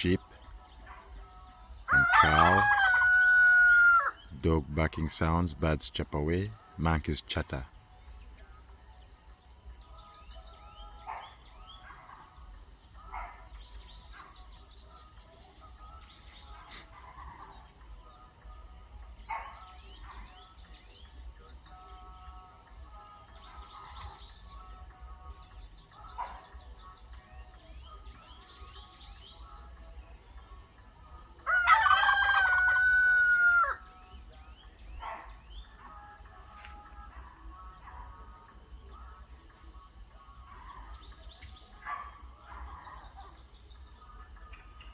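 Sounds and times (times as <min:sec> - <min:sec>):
high insect drone: 0:00.0 - 0:44.9
rooster crowing: 0:01.9 - 0:04.3, 0:31.4 - 0:34.0.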